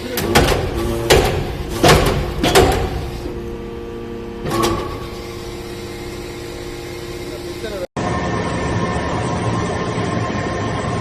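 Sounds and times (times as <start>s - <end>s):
loud bursts of machine noise: 0.0s - 11.0s
machine hum: 0.0s - 11.0s.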